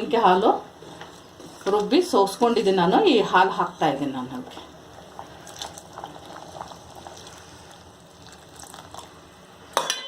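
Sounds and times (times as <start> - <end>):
pot boiling with bubbling pops: 4.2 - 10.0.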